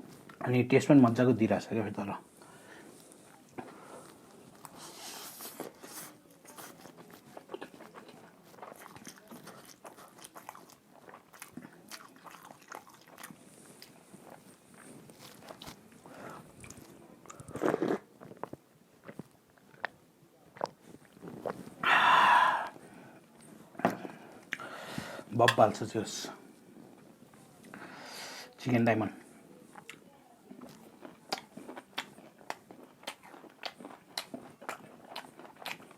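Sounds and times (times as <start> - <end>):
chewing and biting: 3.0 - 21.8, 29.7 - 35.9.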